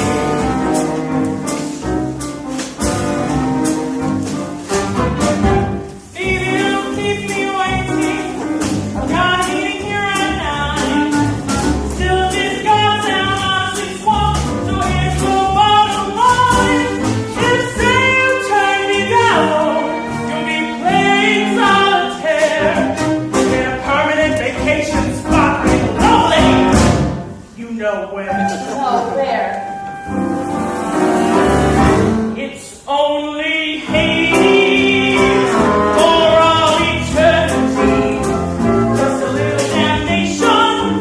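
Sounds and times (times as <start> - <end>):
drums keeping a beat: 0.0 - 19.7
small band playing: 0.0 - 32.8, 33.7 - 41.0
person singing: 6.1 - 26.9, 32.3 - 41.0.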